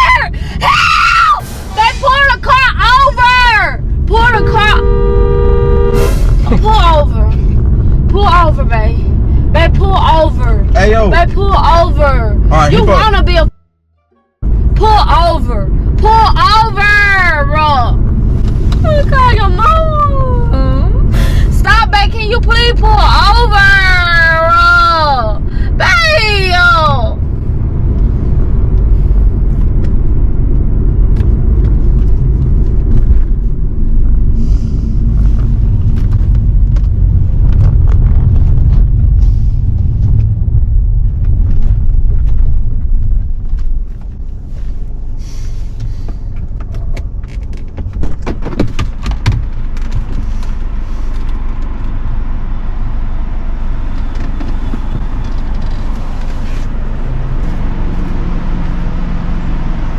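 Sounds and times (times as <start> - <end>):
road rumble in car cabin: 0.0 - 13.6, 14.4 - 59.9
car engine: 0.0 - 59.9
sharp clicks and knocks: 46.4 - 50.5.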